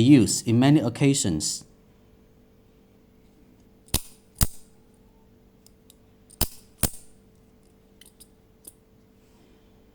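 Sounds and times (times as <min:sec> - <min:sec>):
knife blade metallic snaps: 0:03.9 - 0:04.6, 0:06.3 - 0:07.1.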